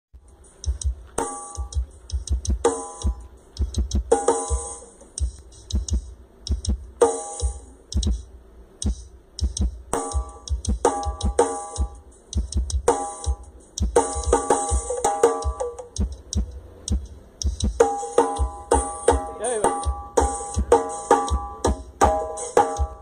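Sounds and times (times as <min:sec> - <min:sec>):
electronic dance music: 0:18.4 - 0:23.0.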